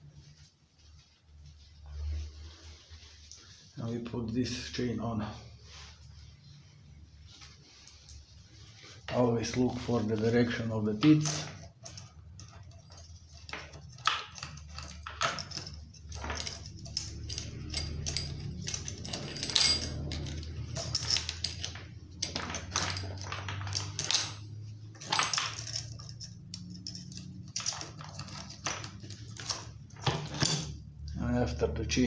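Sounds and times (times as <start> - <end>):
chainsaw chain clinking and rattling: 9.4 - 31.0.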